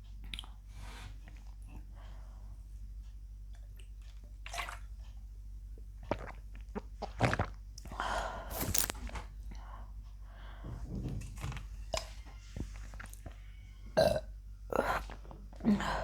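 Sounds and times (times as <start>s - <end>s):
person swallowing drink: 6.1s - 9.1s.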